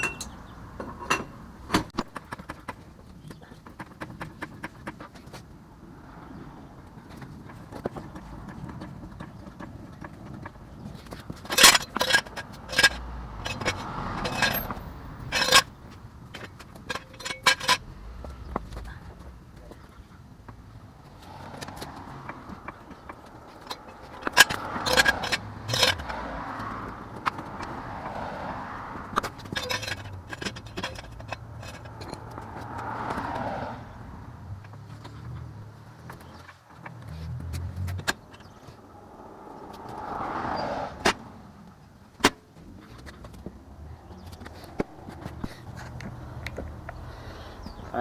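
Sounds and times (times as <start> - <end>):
metal jack clanking: 0.0 - 2.0, 11.2 - 17.9, 23.1 - 26.2, 29.0 - 32.8.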